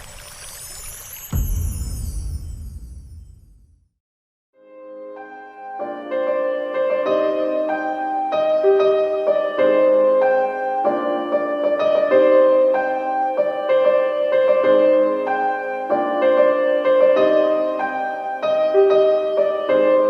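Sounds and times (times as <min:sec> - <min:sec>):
gentle piano melody: 0:04.6 - 0:20.0.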